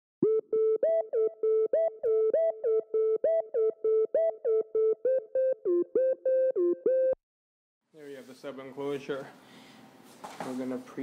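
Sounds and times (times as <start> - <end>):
synthesizer melody of clipped notes: 0.2 - 7.2.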